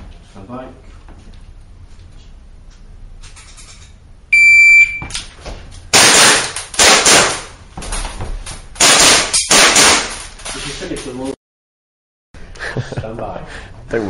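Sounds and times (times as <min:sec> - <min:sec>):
shot timer electronic beep: 0:04.3 - 0:05.1
gunshots with indoor reverberation: 0:05.9 - 0:07.5, 0:08.8 - 0:10.2.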